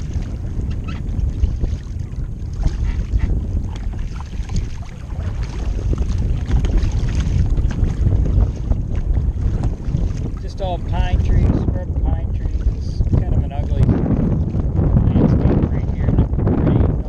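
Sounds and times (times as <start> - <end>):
water splashing and dripping: 0.0 - 10.6
wind buffeting microphone: 0.0 - 17.0.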